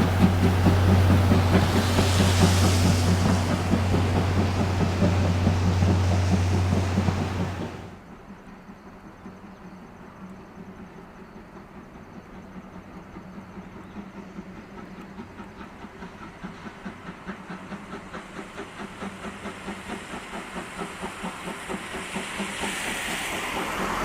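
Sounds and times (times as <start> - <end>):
steam hissing: 0.0 - 8.0, 13.1 - 24.0
steam locomotive exhaust chuffing: 0.0 - 8.2, 10.6 - 24.0.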